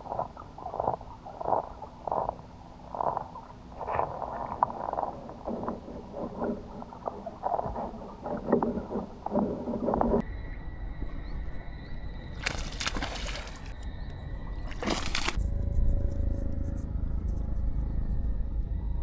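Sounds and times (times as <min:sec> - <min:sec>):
fish crunching crayfish: 0:00.0 - 0:10.2, 0:12.4 - 0:13.8, 0:14.6 - 0:15.4.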